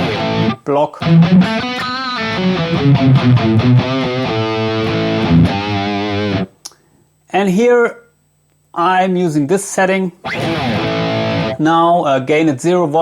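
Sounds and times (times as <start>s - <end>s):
distorted electric guitar lead: 0.0s - 6.5s, 10.2s - 11.6s.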